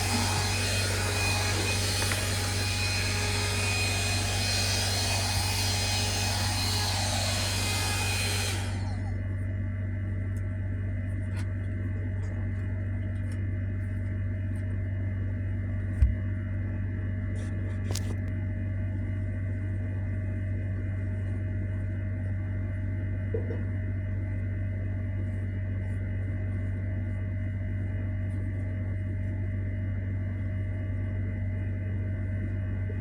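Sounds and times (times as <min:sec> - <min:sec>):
hair dryer air rushing: 0:00.0 - 0:09.2
low motor hum: 0:00.0 - 0:33.0.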